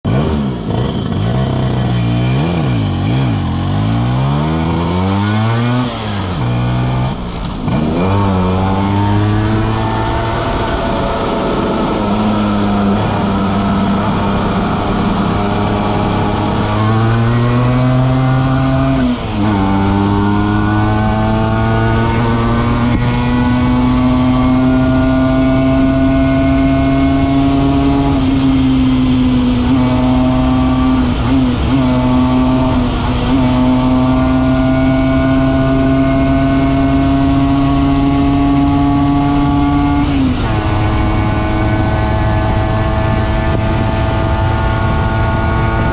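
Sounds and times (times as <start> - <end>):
scooter engine revving: 0.1 - 45.9.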